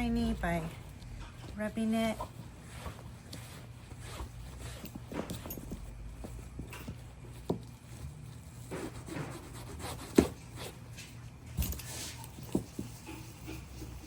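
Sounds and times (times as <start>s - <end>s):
cloth rubbing leather: 0.0s - 11.0s.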